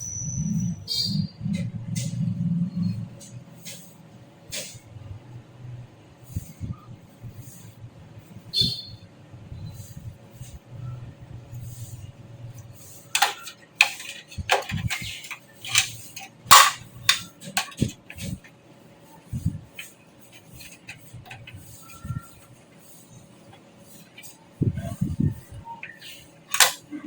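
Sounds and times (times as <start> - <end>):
computer parts clicking in metal case: 13.2 - 18.5, 25.8 - 26.8.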